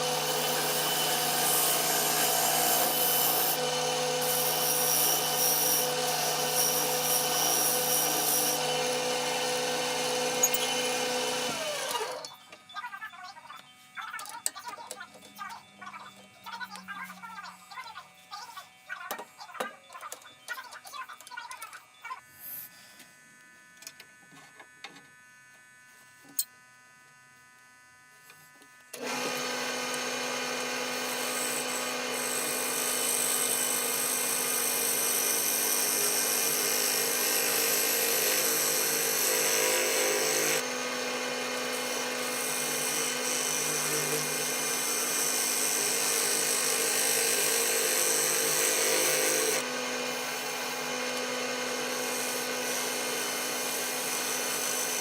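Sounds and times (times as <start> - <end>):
wood lathe running: 0.0 - 12.3, 28.9 - 55.0.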